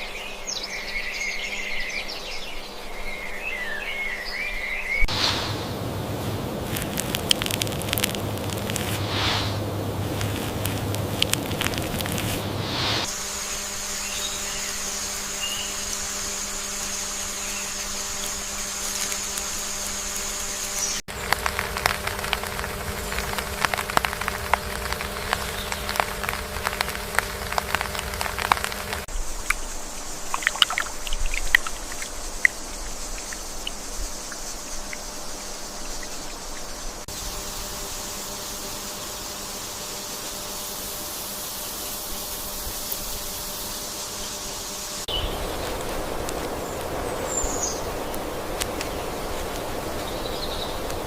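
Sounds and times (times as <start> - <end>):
steady low hum: 5.0 - 51.0
stream water trickling: 5.2 - 9.0, 21.1 - 37.1
small splashes and drips: 21.1 - 36.8.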